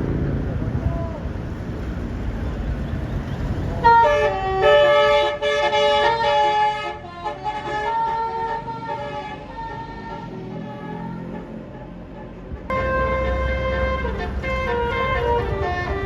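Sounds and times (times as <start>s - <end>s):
low rumble: 0.0s - 4.6s, 12.6s - 16.0s
musical bus horn melody: 3.8s - 16.0s.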